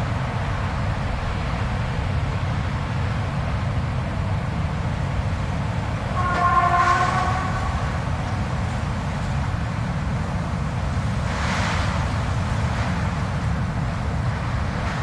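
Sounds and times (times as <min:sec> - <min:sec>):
low blizzard wind: 0:00.0 - 0:15.0
horn-like howl: 0:06.1 - 0:09.0.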